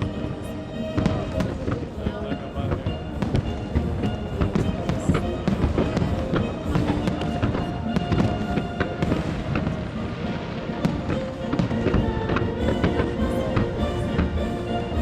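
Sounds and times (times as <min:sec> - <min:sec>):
fireworks bursting: 0:00.0 - 0:14.9
music playing: 0:00.0 - 0:15.0.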